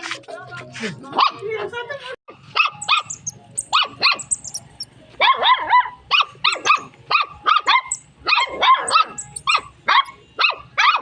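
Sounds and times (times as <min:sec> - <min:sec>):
small dog yapping: 0:02.5 - 0:04.6, 0:05.2 - 0:11.0.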